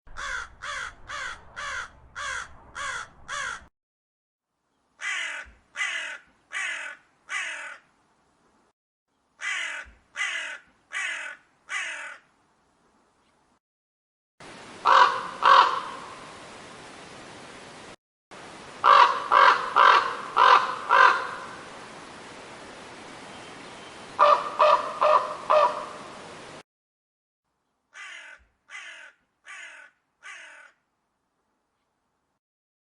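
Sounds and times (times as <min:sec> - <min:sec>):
crow cawing: 0:00.1 - 0:03.7, 0:05.0 - 0:07.9, 0:09.4 - 0:12.3, 0:14.8 - 0:16.0, 0:18.8 - 0:21.6, 0:24.2 - 0:26.0, 0:27.9 - 0:30.8
steady background hiss: 0:14.4 - 0:26.6.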